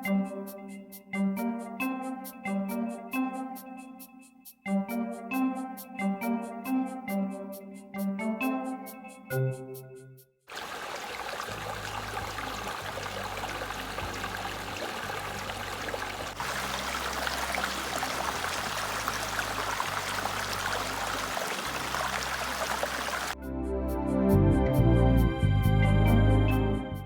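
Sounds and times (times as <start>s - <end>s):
stream running: 10.5s - 23.4s.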